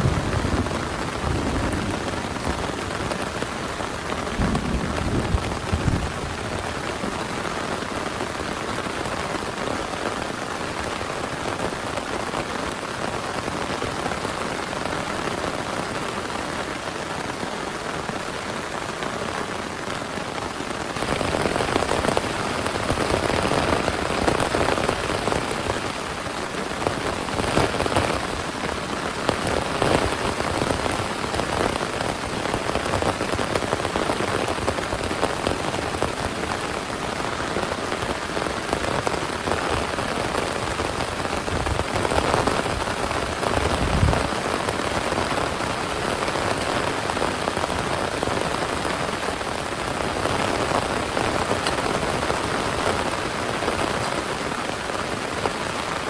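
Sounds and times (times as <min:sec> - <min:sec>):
heavy rain falling: 0:00.0 - 0:56.0
raindrops pattering on a surface: 0:00.0 - 0:56.0.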